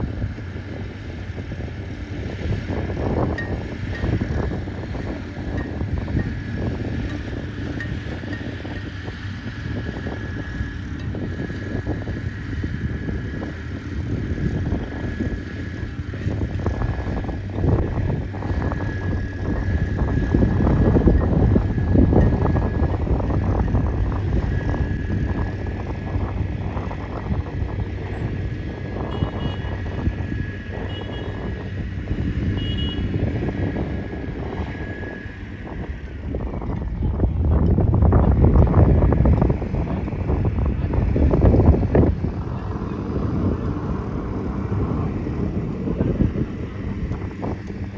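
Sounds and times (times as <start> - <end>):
vehicle engines rumbling: 0.0 - 47.9
wind buffeting microphone: 0.0 - 47.9.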